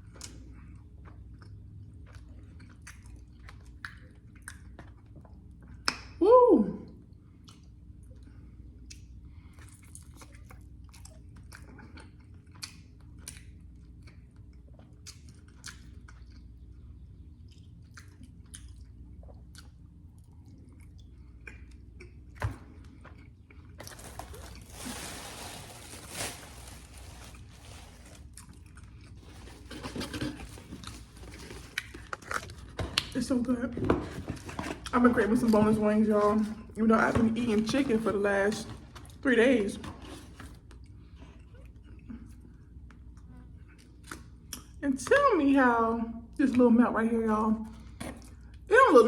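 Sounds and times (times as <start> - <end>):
chewing with wet mouth clicks: 0.0 - 6.2, 7.0 - 23.9, 28.3 - 33.2, 40.4 - 45.2.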